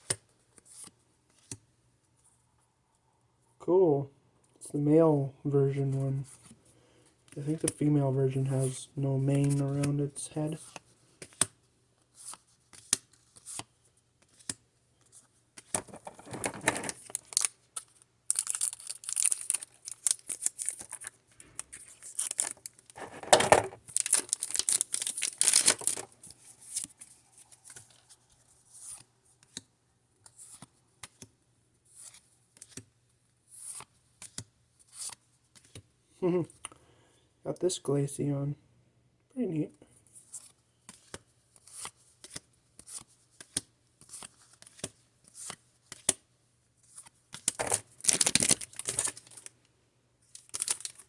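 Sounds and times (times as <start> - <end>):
cards rustling and clicking: 0.0 - 1.7, 8.5 - 32.9, 33.6 - 35.9, 40.2 - 46.2, 46.8 - 49.5, 50.3 - 51.0
wrapper crinkling: 15.8 - 26.9, 47.5 - 49.5, 50.3 - 51.0
foil pack tearing: 18.3 - 21.0, 22.0 - 26.1, 47.6 - 49.5.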